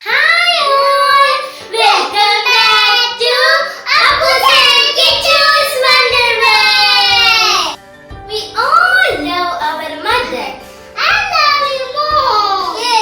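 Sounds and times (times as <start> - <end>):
faint music: 0.0 - 13.0
child singing: 0.1 - 7.8.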